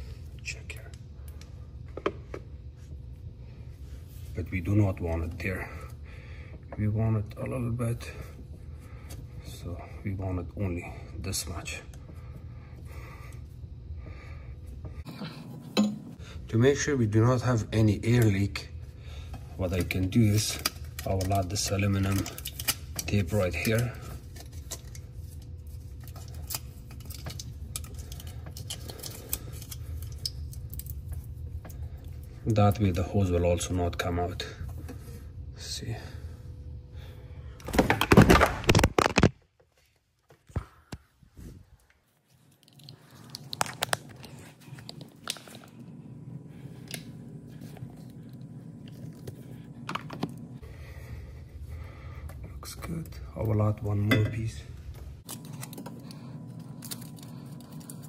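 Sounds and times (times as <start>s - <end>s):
low steady hum: 0.0s - 58.0s
foil tape clicks and crinkles: 20.3s - 25.0s, 25.8s - 31.0s, 37.7s - 39.3s, 43.2s - 44.4s, 55.2s - 58.0s
foil tape tearing and crinkling: 37.7s - 39.3s, 56.6s - 58.0s.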